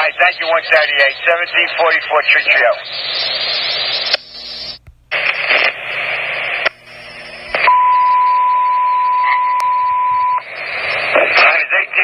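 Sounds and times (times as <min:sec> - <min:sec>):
radio static hiss: 0:00.0 - 0:07.8, 0:10.4 - 0:12.0
high-pitched radio tone: 0:00.0 - 0:12.0.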